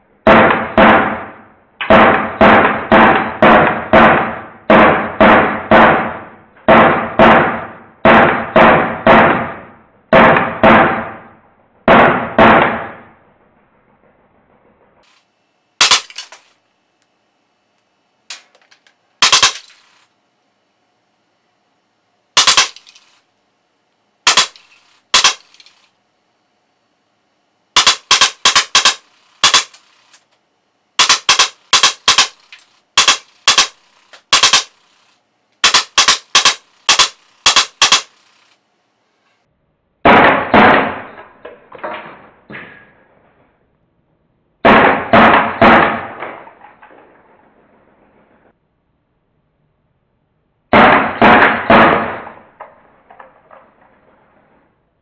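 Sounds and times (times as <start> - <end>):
bb gun shots: 0.2 - 13.2, 15.8 - 16.5, 19.2 - 20.0, 22.4 - 23.2, 24.3 - 25.9, 27.8 - 30.1, 31.0 - 34.8, 35.6 - 38.5, 40.0 - 41.2, 44.6 - 46.5, 50.7 - 52.5.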